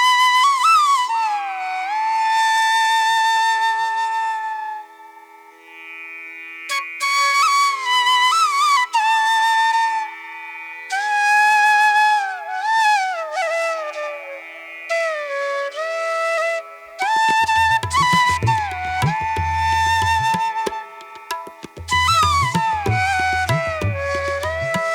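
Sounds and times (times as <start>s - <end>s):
sliding wind-like melody: 11.5s - 24.9s.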